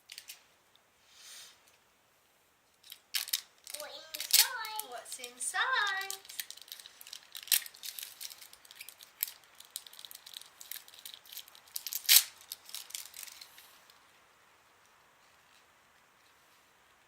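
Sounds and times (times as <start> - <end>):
plastic toy capsule crinkling and clicking: 2.8 - 13.6.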